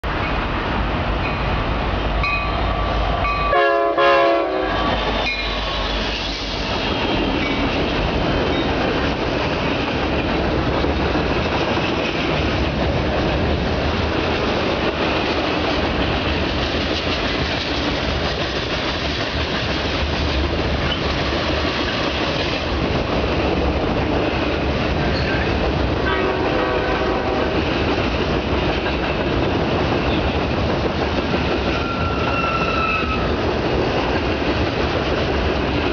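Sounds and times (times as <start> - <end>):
freight train rumbling past: 0.0 - 35.9
train air horn: 3.4 - 5.9, 26.0 - 27.6.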